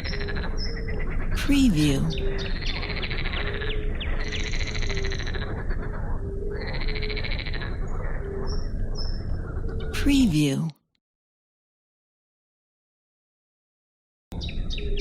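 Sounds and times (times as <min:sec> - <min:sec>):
frogs croaking and trilling: 0:00.0 - 0:10.0.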